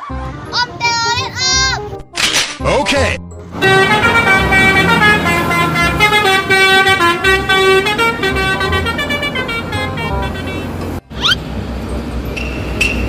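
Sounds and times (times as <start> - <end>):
bus horn playing a tune: 3.5 - 11.2.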